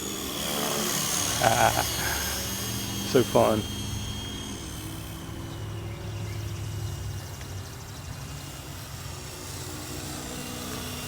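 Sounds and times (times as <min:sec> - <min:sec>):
toy helicopter motor whine: 0:00.0 - 0:11.0.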